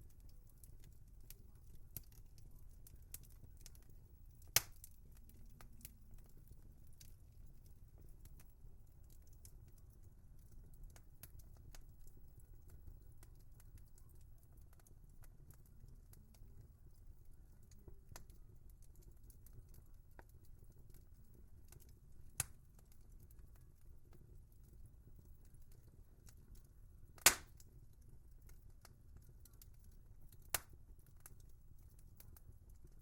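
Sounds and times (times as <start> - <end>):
wood fire crackling: 0.0 - 33.0.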